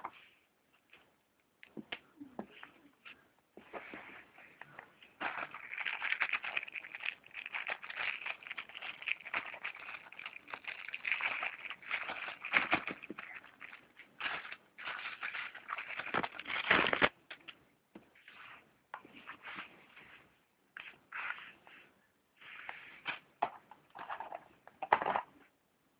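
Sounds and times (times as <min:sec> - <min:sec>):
packaging crinkling: 0:05.2 - 0:17.2.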